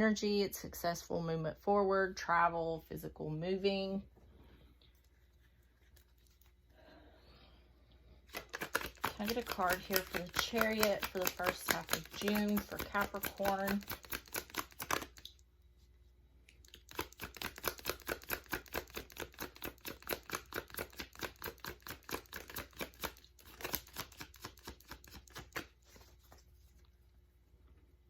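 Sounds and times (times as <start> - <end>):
cards being shuffled: 8.3 - 15.3, 16.6 - 26.9.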